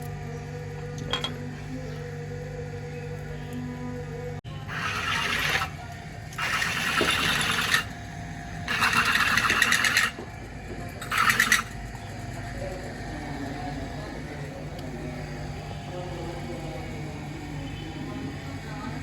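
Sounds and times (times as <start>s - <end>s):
buzzing rattling workshop tool: 4.6s - 19.0s.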